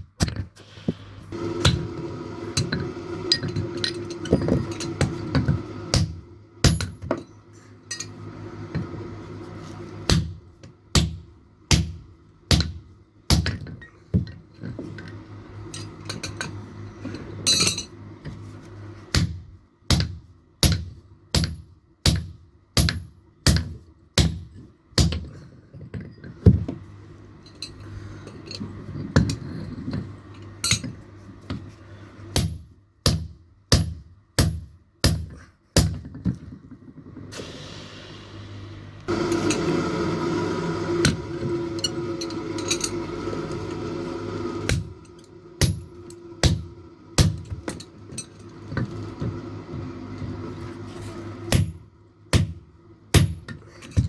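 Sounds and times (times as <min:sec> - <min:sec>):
hammer striking steel on anvil: 0:05.9 - 0:07.2, 0:37.3 - 0:40.2, 0:45.6 - 0:47.6, 0:51.5 - 0:53.6
steady low hum: 0:26.2 - 0:54.0.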